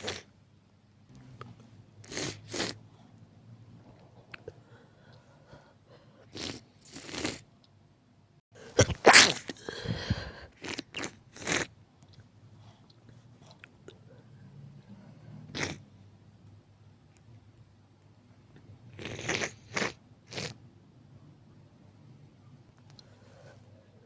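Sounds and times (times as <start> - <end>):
person sneezing: 8.6 - 10.7.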